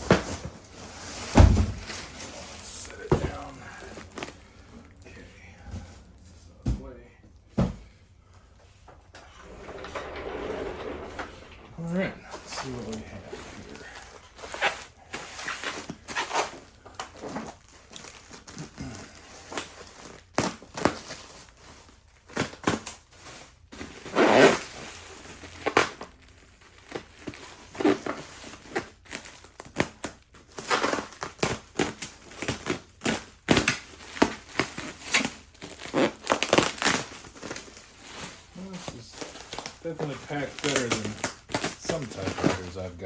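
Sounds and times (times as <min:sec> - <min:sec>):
packing material crinkling: 0:00.0 - 0:05.2, 0:09.4 - 0:43.0.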